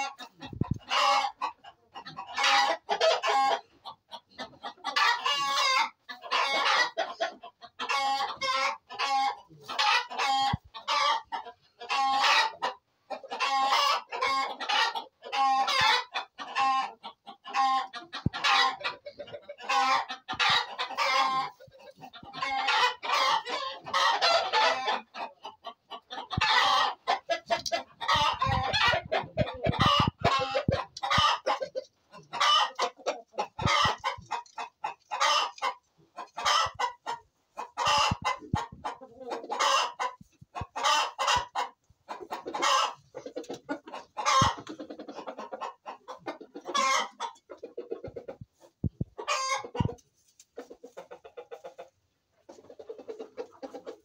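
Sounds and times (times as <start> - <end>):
chickens clucking: 0.0 - 54.0
roosters crowing: 26.3 - 31.7.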